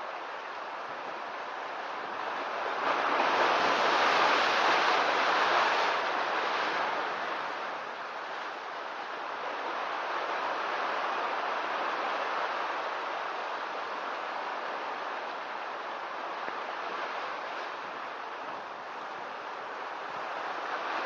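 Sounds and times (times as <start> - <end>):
ocean waves crashing on rocks: 0.0 - 21.0.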